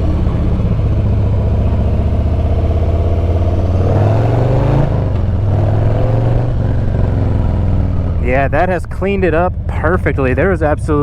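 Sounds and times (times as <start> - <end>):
motorcycle engine accelerating: 0.0 - 11.0.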